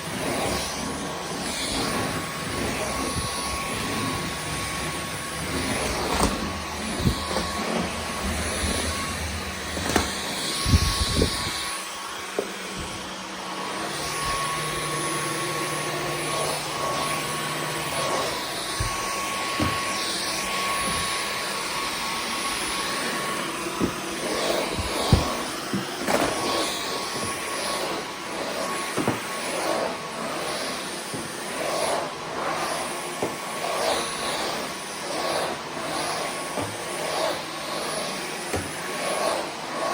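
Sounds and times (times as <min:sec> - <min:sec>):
stick vacuum running: 0:00.0 - 0:39.9
vacuum head knocking: 0:24.8 - 0:26.0.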